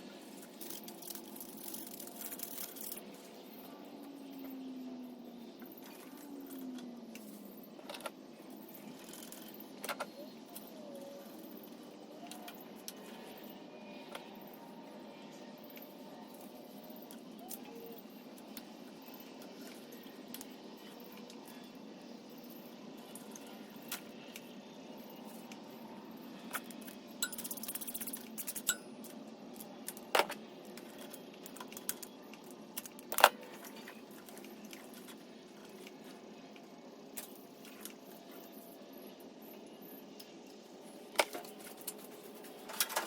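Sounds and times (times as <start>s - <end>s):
metallic clinks of tools: 27.2s - 29.1s.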